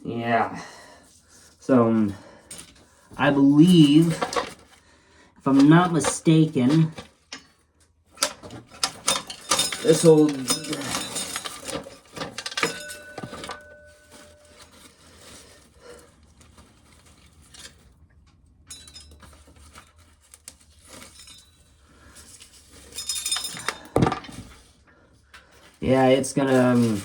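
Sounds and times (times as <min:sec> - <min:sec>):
corn kernels rattling into container: 0:09.3 - 0:11.7.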